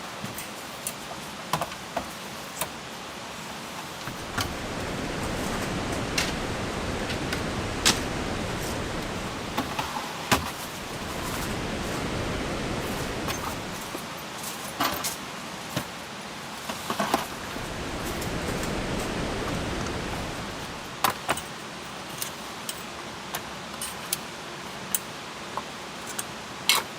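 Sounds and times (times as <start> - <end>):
rain hissing: 4.0 - 14.0, 17.0 - 21.0.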